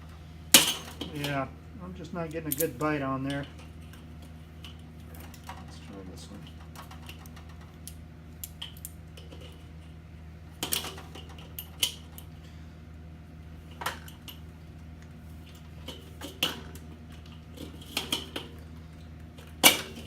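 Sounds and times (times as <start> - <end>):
hand tools clinking on metal: 2.4 - 3.6.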